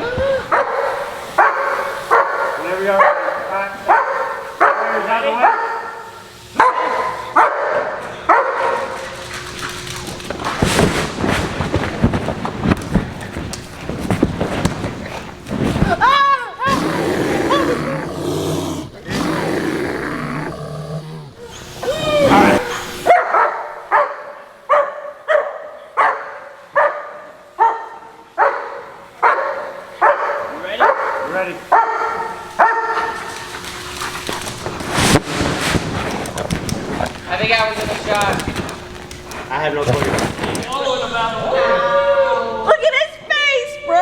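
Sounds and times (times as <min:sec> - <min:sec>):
dog barking: 0:00.5 - 0:08.9, 0:21.8 - 0:33.2
scuffling and thumping: 0:09.8 - 0:18.2, 0:33.5 - 0:40.8.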